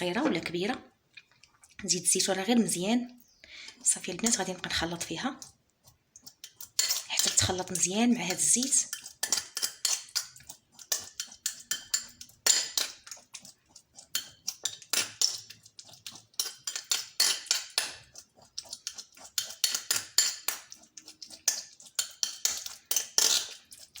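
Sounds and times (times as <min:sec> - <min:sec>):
utensil scraping a dish: 0:05.9 - 0:24.0.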